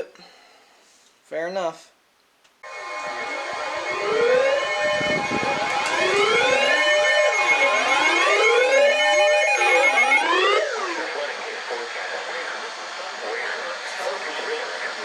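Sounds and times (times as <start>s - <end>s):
sirens wailing: 2.6s - 11.5s.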